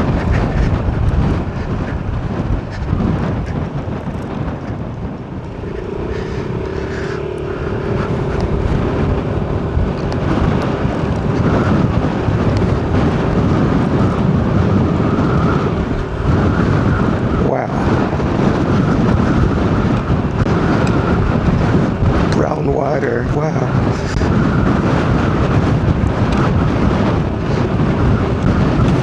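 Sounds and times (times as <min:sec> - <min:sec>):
steady mid-pitched hum: 0:00.0 - 0:25.3
car road and wind noise: 0:00.0 - 0:29.0.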